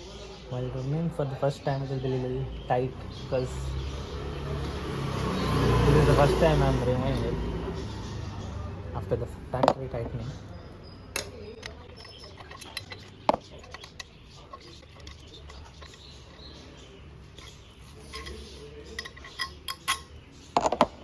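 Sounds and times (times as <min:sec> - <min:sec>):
metallic clinks of hand tools: 0:17.4 - 0:20.7.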